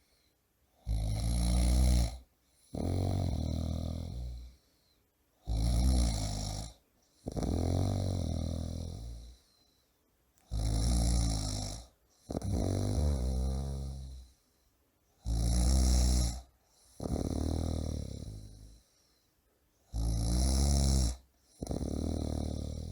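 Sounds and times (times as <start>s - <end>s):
man snoring loudly: 0.8s - 4.6s, 5.4s - 9.4s, 10.5s - 14.2s, 15.2s - 18.8s, 19.9s - 22.9s.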